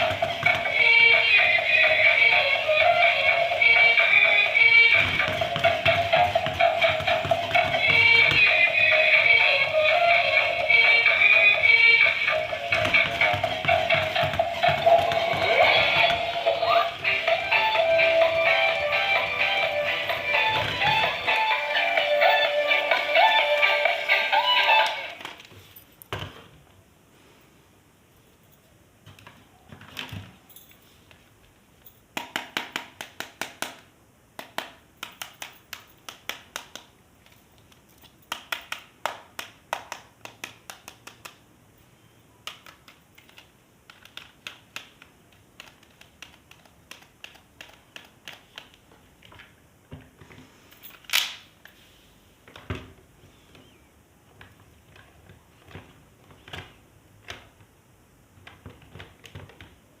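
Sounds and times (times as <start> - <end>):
plastic toy parts clicking: 42.4 - 49.4.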